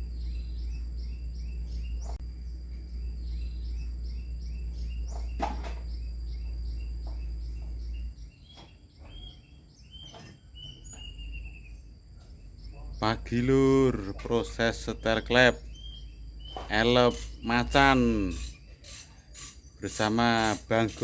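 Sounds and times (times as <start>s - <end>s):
low hum: 0.0s - 8.4s
insects trilling: 0.0s - 21.0s.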